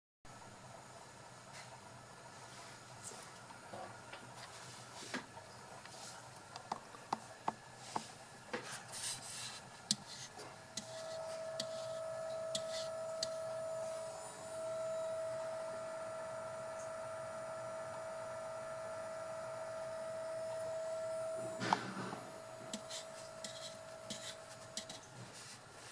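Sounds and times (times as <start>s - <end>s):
motor drive whine: 0.3s - 25.9s
sharp clicks and taps: 9.9s - 10.1s.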